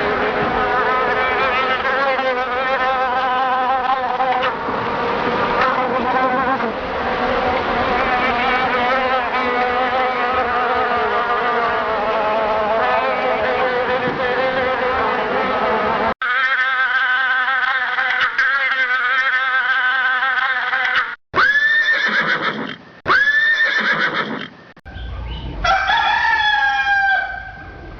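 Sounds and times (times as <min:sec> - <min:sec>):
flies buzzing: 0:00.0 - 0:21.1.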